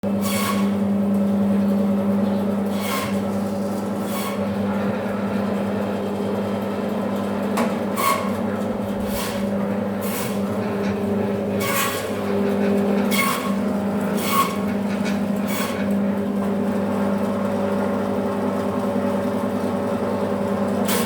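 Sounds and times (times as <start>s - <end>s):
band saw humming: 2.7s - 16.6s.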